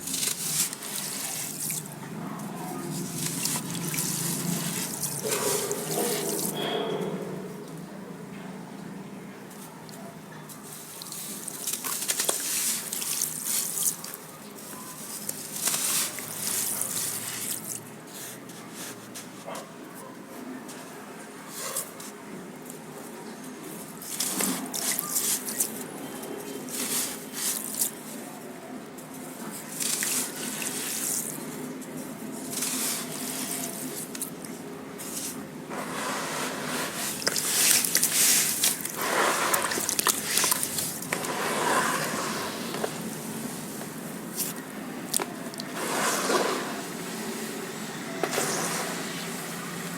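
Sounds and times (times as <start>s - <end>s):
sand crumbling into water: 35.7s - 47.2s.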